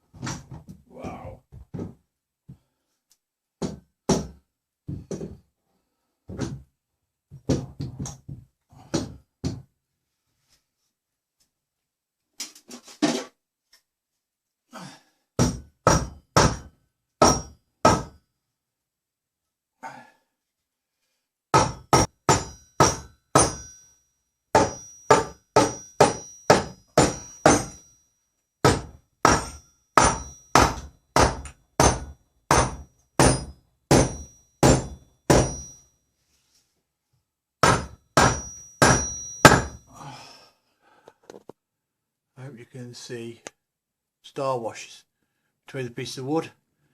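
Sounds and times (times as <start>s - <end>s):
hammer blows with metallic ring: 21.6s - 24.0s, 24.6s - 28.0s, 28.7s - 35.9s, 37.6s - 40.0s.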